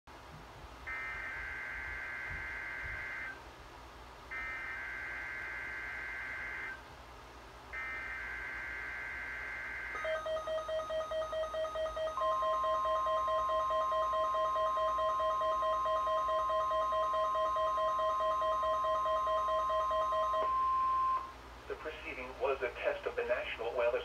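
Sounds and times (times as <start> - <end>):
alert radio alarm beeping: 0.9 - 3.4, 4.3 - 6.8, 7.8 - 21.3
steady warning alarm tone: 0.9 - 3.4, 4.3 - 6.8, 7.8 - 21.4.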